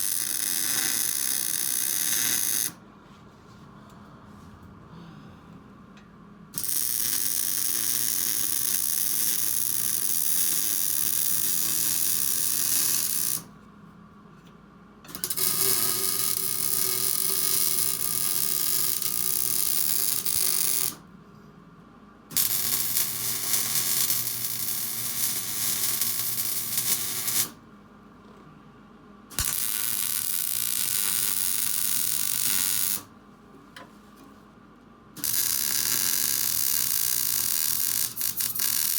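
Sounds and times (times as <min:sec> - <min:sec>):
welding arc crackling: 0:00.0 - 0:02.8, 0:06.6 - 0:13.4, 0:15.1 - 0:21.0, 0:22.3 - 0:27.6, 0:29.4 - 0:33.1, 0:35.2 - 0:38.9.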